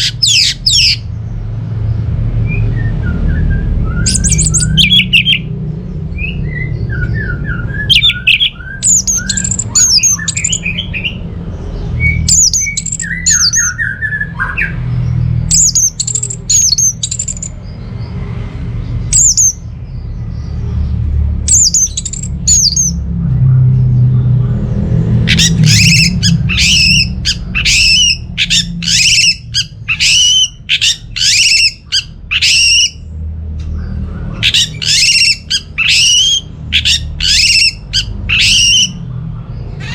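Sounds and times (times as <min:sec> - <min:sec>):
harsh squawky bird notes: 0:00.0 - 0:01.1, 0:03.4 - 0:11.3, 0:25.2 - 0:33.1, 0:34.3 - 0:39.0
thrush singing: 0:02.5 - 0:14.9, 0:25.2 - 0:33.0, 0:34.4 - 0:39.0.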